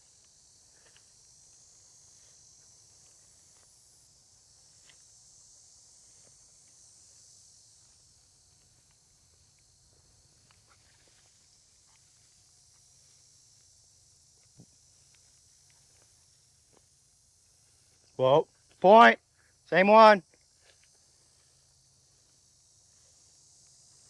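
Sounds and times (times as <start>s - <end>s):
steady high hiss: 13.0s - 24.0s.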